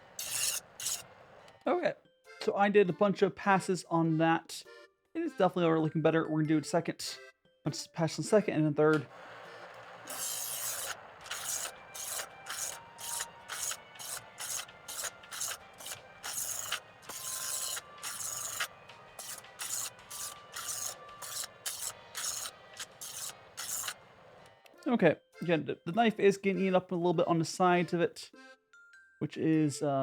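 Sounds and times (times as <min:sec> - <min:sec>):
electric knife sharpener running: 0:00.0 - 0:01.5, 0:09.0 - 0:24.6
knife grinding in sharpener: 0:00.0 - 0:01.5, 0:09.0 - 0:24.5.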